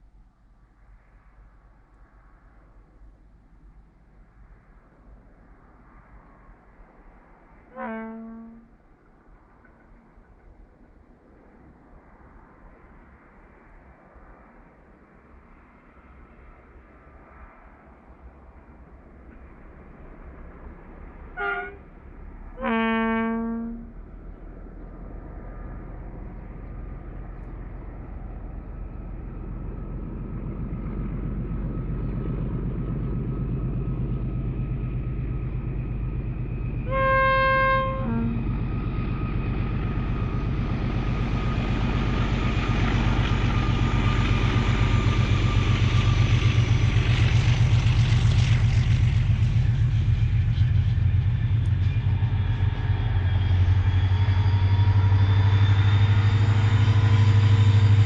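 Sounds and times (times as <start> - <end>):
rumble of approaching train: 0.0 - 58.0
train horn blasting: 7.7 - 8.8, 21.4 - 21.9, 22.5 - 24.0, 36.4 - 38.7
locomotive engines working hard: 24.1 - 58.0.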